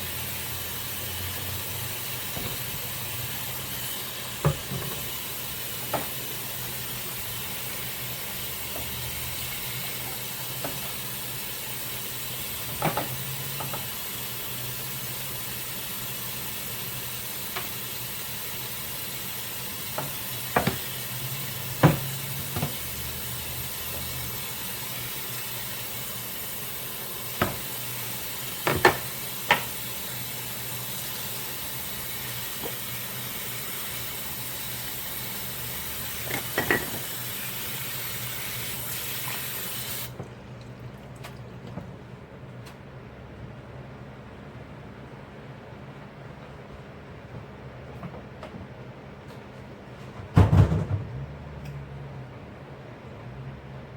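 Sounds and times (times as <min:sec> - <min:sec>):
water running in sink: 0:00.0 - 0:42.2
dishes clinking: 0:36.3 - 0:37.1.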